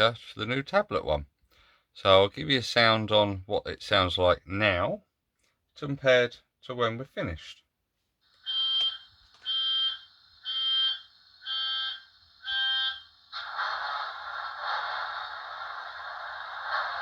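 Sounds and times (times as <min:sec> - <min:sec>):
electronic warning beeps: 0:08.4 - 0:13.3
rushing diesel engine sound: 0:13.1 - 0:17.0.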